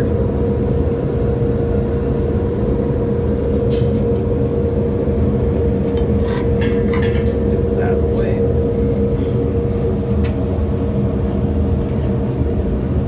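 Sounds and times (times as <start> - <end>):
machine drone with hum: 0.0 - 13.0.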